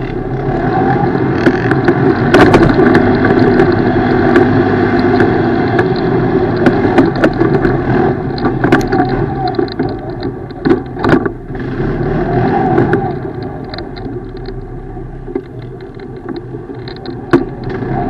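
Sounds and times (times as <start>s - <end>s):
atv engine running: 0.0s - 18.0s
sharp knocks and rattles: 1.1s - 11.8s, 15.3s - 18.0s.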